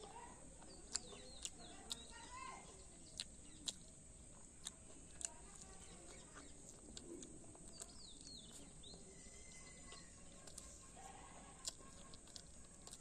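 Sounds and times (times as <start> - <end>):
faint bird chirps: 5.5 - 13.0.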